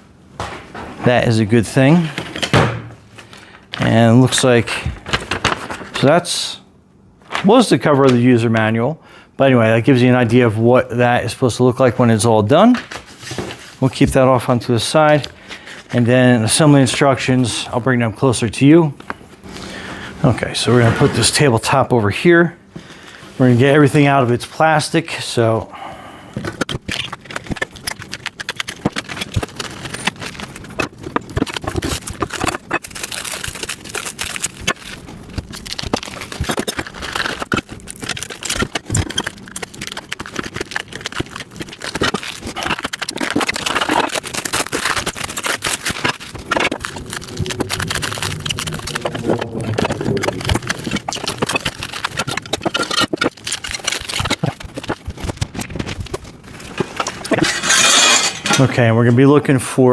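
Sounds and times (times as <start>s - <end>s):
plastic packaging crinkling and tearing: 3.1s - 6.1s, 26.6s - 58.9s
steel parts scraping: 56.8s - 58.9s.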